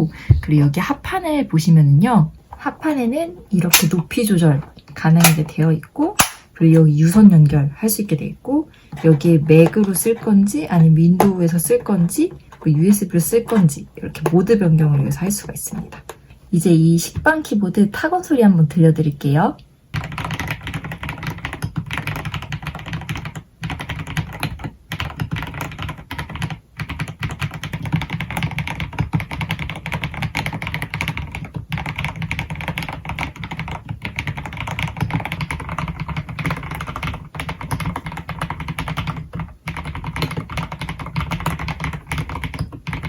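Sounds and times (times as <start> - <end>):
mechanical keyboard typing: 20.0 - 43.0.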